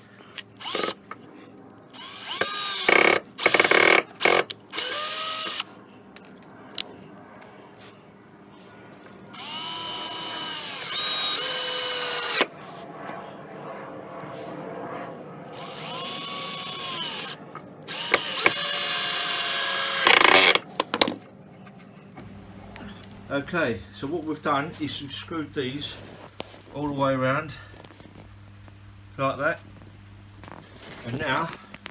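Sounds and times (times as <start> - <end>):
power drill motor whine: 0.6 - 1.2, 1.9 - 5.7, 9.3 - 12.5, 15.5 - 20.7.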